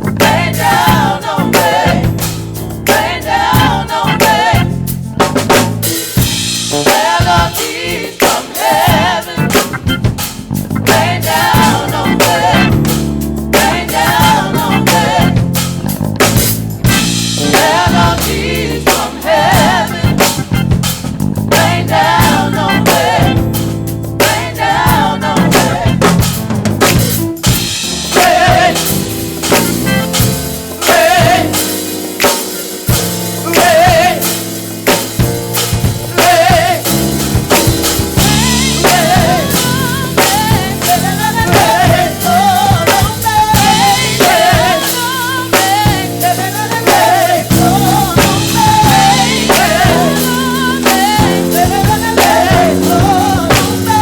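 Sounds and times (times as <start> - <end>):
live church band playing: 0.0 - 54.0
snare hits and rimshots: 6.8 - 13.0, 25.5 - 41.9.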